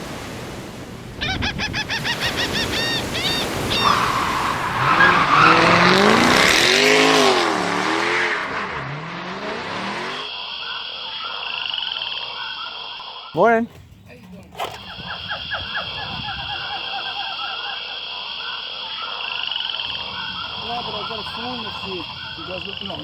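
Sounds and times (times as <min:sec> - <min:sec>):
high chirps: 0:01.2 - 0:14.1, 0:14.8 - 0:23.0
tyre squeal: 0:02.0 - 0:12.8
car engine revving: 0:03.8 - 0:10.3, 0:19.8 - 0:23.0.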